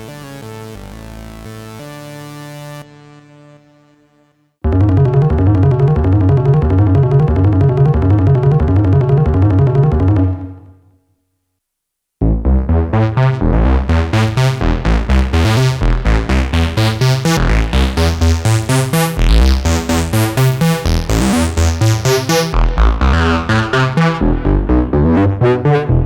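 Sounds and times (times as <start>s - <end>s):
synthesizer bass sequence: 4.6s - 10.8s, 12.2s - 26.0s.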